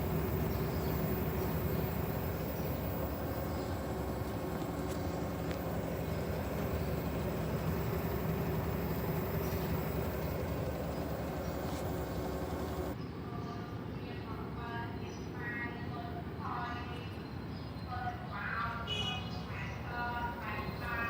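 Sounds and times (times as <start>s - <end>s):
washing machine motor humming: 0.0s - 13.0s.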